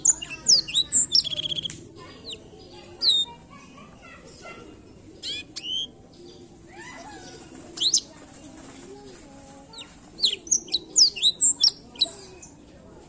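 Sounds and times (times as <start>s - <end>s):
bird singing whistled notes: 0.0s - 1.7s, 10.2s - 12.5s.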